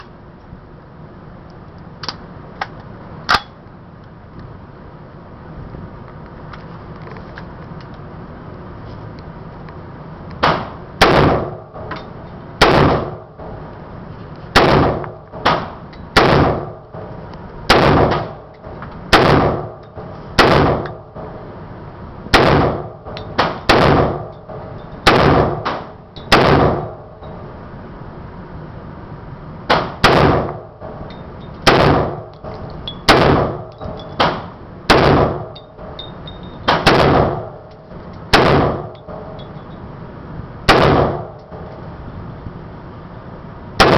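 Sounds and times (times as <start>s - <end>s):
rifle shots with ringing echo: 10.4s - 11.9s, 12.6s - 13.6s, 14.5s - 21.4s, 22.3s - 27.2s, 29.7s - 36.0s, 36.6s - 37.7s, 38.3s - 39.4s, 40.6s - 41.7s.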